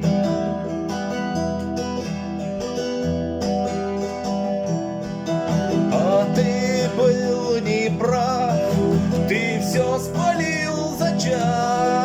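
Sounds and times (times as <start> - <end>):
acoustic guitar strumming chords: 0.0 - 12.0.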